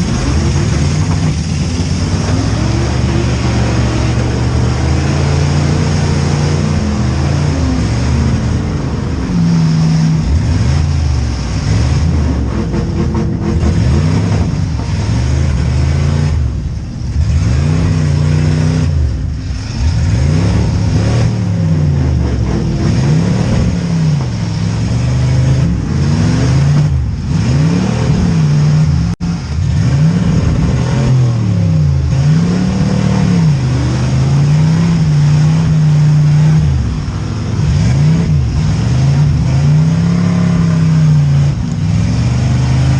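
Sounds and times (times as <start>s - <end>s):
car engines revving: 0.0s - 42.9s.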